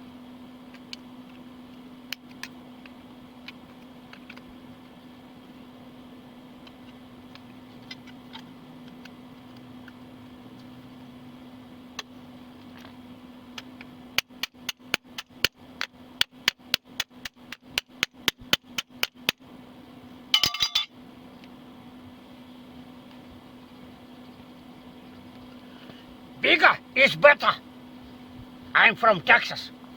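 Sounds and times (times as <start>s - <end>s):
steady low hum: 0.0s - 29.9s
harsh ringing rattle: 20.3s - 20.9s
rapid metallic clinks: 20.3s - 20.9s.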